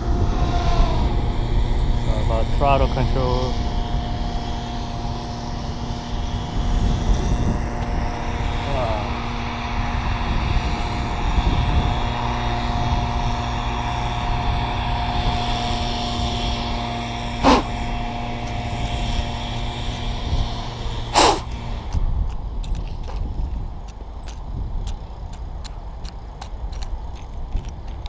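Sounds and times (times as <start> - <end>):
quadcopter motors whining: 0.0 - 28.0.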